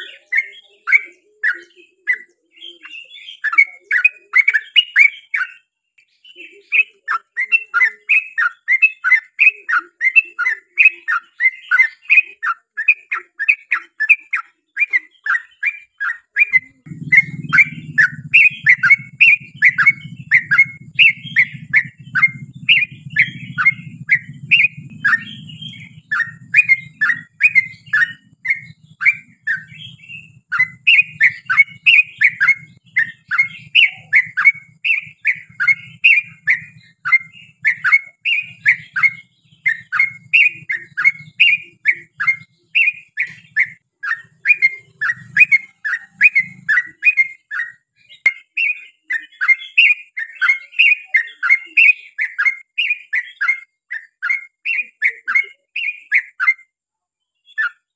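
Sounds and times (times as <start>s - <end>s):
bird chirping bubbly notes: 15.2s - 47.8s
low hum: 16.8s - 37.6s.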